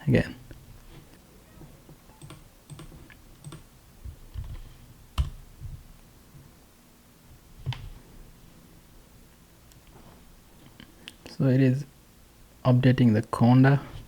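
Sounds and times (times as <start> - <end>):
computer keyboard key presses: 2.2 - 3.6, 5.2 - 5.4.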